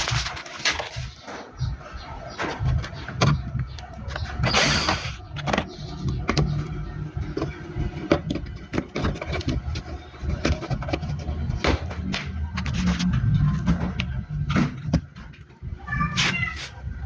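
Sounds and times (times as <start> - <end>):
low rumble: 10.0 - 16.0.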